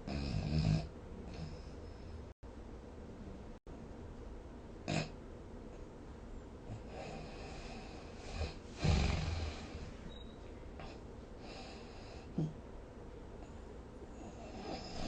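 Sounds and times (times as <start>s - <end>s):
person snoring: 6.8s - 10.0s, 14.2s - 15.0s.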